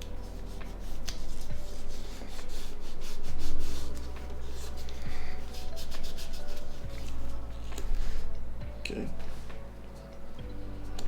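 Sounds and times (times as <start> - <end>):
hands scratching plastic parts: 0.0 - 8.4
soft background music: 0.0 - 11.0.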